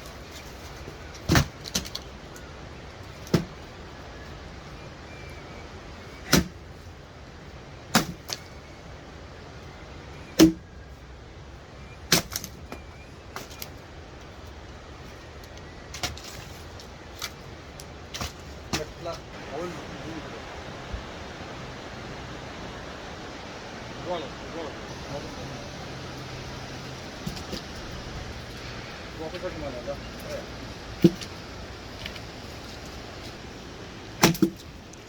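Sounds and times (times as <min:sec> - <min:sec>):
steady hiss: 0:18.8 - 0:35.0.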